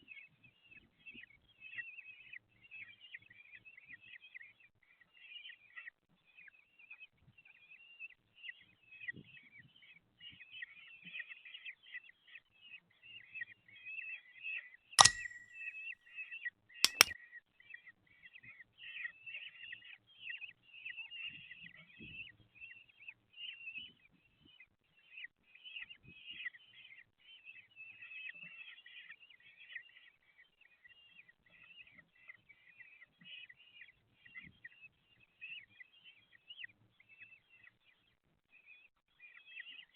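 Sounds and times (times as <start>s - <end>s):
sharp knocks: 16.9s - 17.1s.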